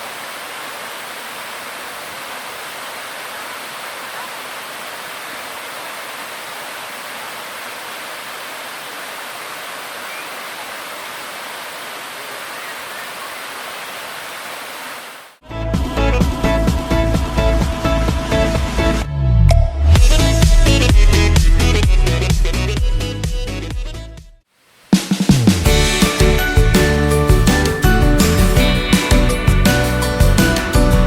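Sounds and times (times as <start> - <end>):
waterfall rushing: 0.0 - 15.4, 24.6 - 31.0.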